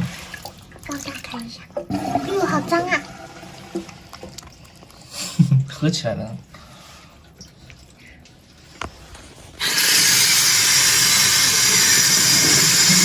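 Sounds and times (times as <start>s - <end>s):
water running from a tap: 0.0s - 4.4s, 9.6s - 13.0s.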